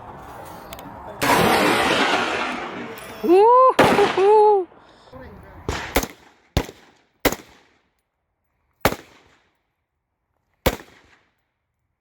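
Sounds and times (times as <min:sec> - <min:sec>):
gunshots with echo: 0:03.8 - 0:04.5.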